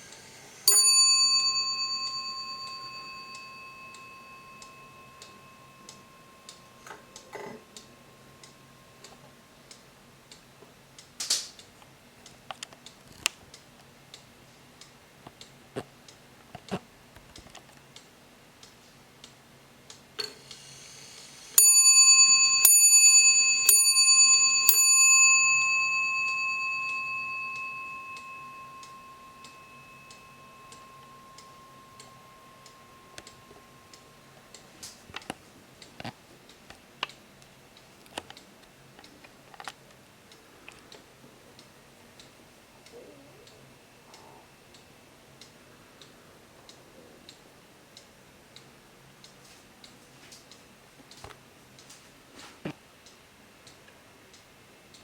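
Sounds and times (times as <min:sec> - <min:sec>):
clock movement whirring: 0:00.0 - 0:10.4, 0:20.2 - 0:35.9
wall clock ticking: 0:00.0 - 0:16.4, 0:21.6 - 0:52.0
clock striking brass bell: 0:00.6 - 0:09.0, 0:21.6 - 0:34.4.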